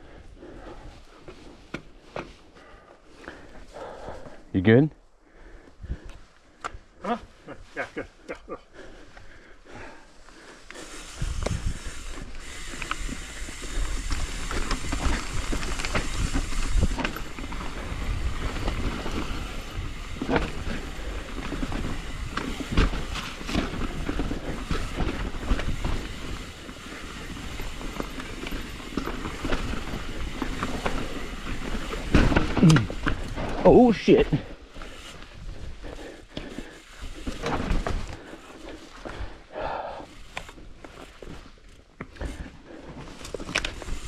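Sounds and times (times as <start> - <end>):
bike chain and frame rattling: 8.7 - 44.0
bike tyres rumbling over dirt: 8.8 - 44.0.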